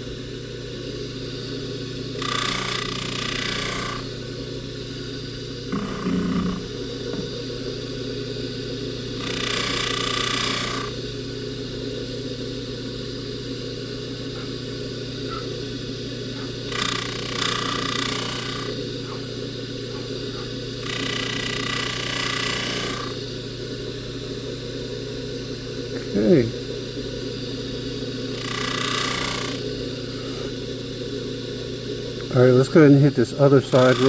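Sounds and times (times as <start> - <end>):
buffing machine humming: 0.0 - 12.1, 13.2 - 24.4, 26.0 - 34.0
chain hissing on polishing wheel: 2.1 - 4.2, 5.2 - 7.0, 9.2 - 11.0, 16.3 - 19.3, 19.9 - 23.4, 28.3 - 30.6, 32.2 - 34.0.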